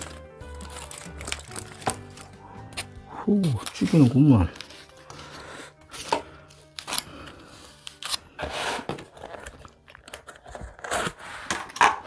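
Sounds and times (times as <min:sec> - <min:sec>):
crisp crunching while eating: 0:00.0 - 0:05.1.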